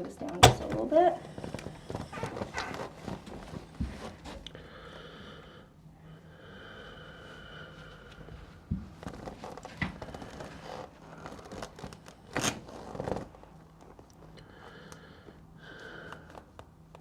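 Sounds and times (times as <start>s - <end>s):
clothing rustling on table: 0.4s - 4.4s.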